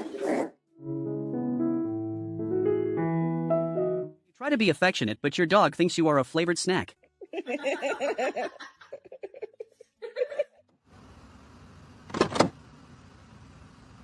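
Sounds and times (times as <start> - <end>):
person giggling and laughing: 7.2 - 10.7.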